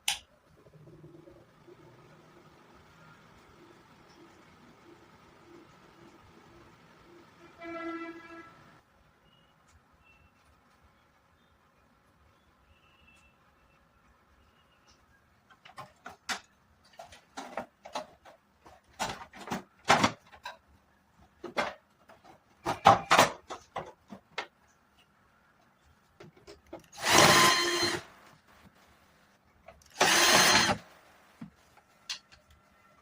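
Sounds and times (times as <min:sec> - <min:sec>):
loud noisy buzzing burst: 0:30.0 - 0:30.9.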